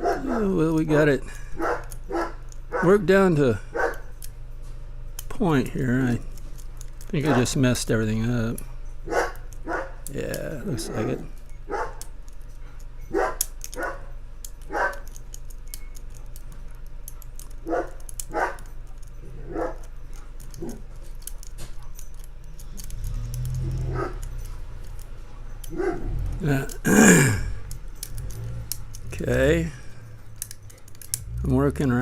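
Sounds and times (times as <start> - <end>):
dog barking: 0.0 - 0.5, 1.6 - 3.0, 3.7 - 4.1, 7.2 - 7.6, 9.1 - 10.0, 10.8 - 12.0, 13.1 - 15.1, 17.6 - 18.7, 19.4 - 20.8, 23.6 - 24.5, 25.4 - 26.2
lock picks ticking in a padlock: 0.8 - 2.8, 3.7 - 4.4, 5.0 - 26.8, 27.6 - 31.4.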